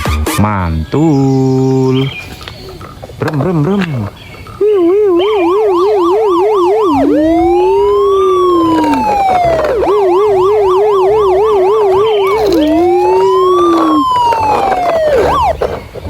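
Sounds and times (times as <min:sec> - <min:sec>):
electronic police siren: 0:04.4 - 0:15.7.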